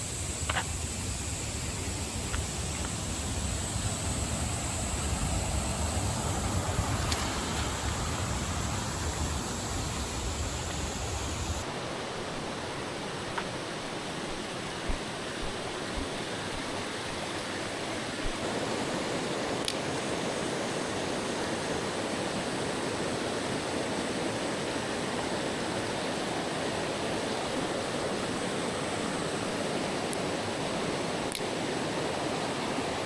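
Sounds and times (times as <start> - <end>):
water rushing over rocks: 0.0 - 11.7.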